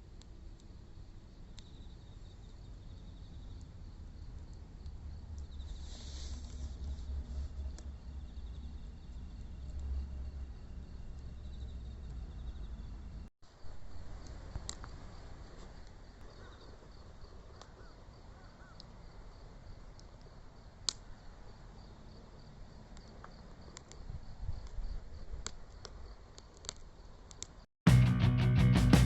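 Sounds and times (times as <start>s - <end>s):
insects chirping: 0.4s - 27.3s
bonfire crackling and popping: 14.2s - 15.0s, 25.4s - 27.6s
faint bird calls: 16.2s - 19.2s.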